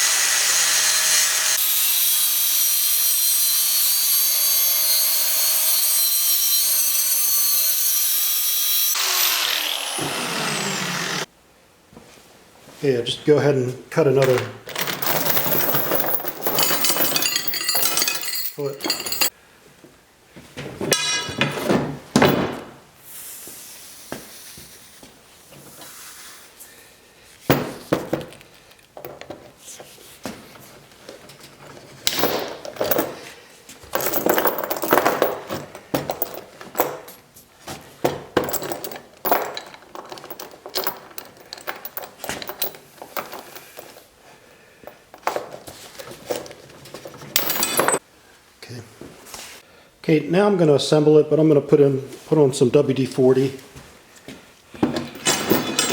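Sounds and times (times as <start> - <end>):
chain links clinking: 14.7 - 19.3, 32.0 - 33.3, 33.9 - 37.1, 38.4 - 44.0, 46.3 - 48.0, 55.0 - 55.9.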